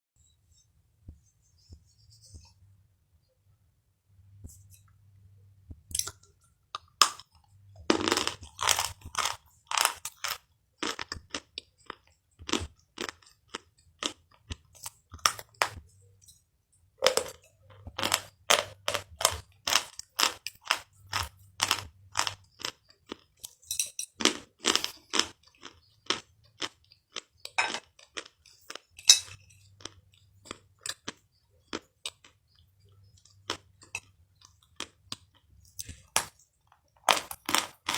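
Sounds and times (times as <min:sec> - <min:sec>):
crunchy food chewing: 0:05.9 - 0:15.9, 0:17.0 - 0:23.6, 0:24.2 - 0:37.9.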